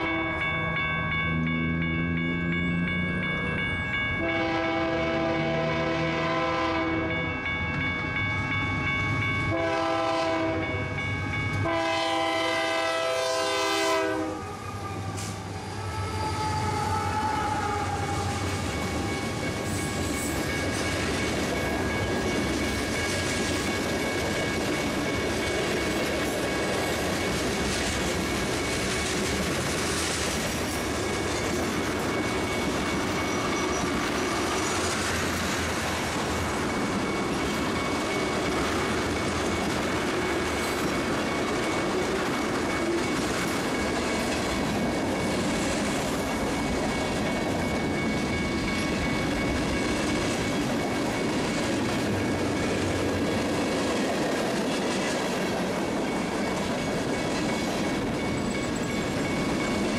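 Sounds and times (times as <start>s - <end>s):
train wheels rumbling: 0.0s - 59.9s
high-pitched wheel squeal: 14.6s - 18.8s
clickety-clack over rail joints: 18.1s - 59.9s.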